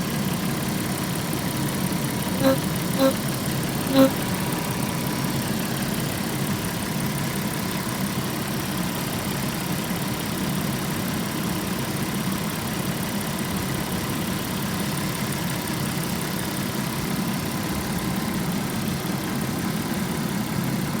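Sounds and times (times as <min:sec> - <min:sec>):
car engine running: 0:00.0 - 0:09.2
engine trumpeting rubbing noise: 0:02.1 - 0:05.1.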